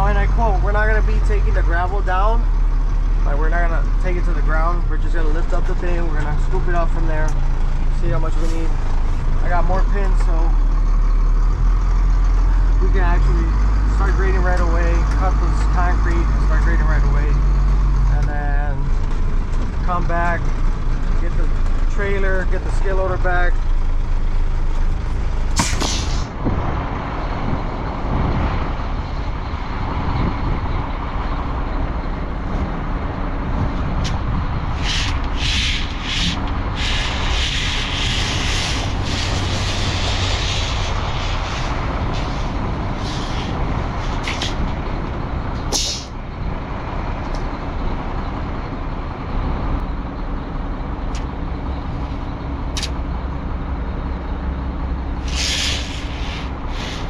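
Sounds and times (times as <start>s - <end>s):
heavy vehicle engine rumble: 0.0s - 57.0s
short hissing sounds: 25.6s - 26.3s, 34.8s - 44.6s, 45.7s - 46.2s, 55.2s - 57.0s.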